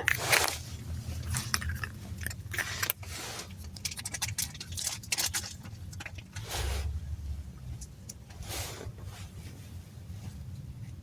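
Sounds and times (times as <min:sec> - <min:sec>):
clicks and crinkles of handling: 0:00.0 - 0:06.4
steady low hum: 0:00.0 - 0:11.0.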